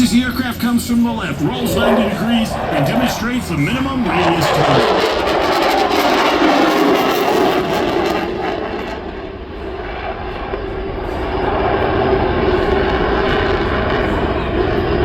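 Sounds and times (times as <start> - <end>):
jet engine roar: 0.0 - 15.0.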